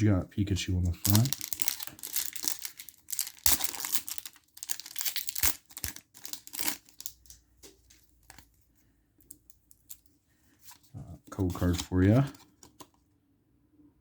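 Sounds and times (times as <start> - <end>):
foil wrapper tearing and crinkling: 0.9 - 7.4.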